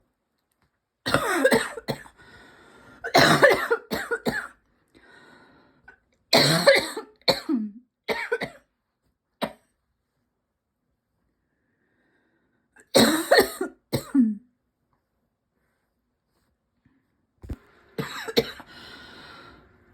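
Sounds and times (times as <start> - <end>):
person coughing: 1.1 - 2.2, 3.1 - 4.6, 6.4 - 8.6, 12.8 - 14.4, 18.0 - 18.7.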